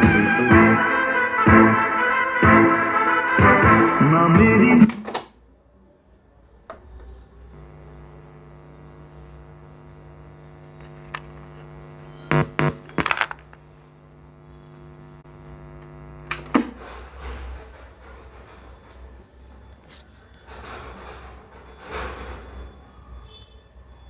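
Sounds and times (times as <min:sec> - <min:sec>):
boombox electrical hum: 0:06.8 - 0:19.0.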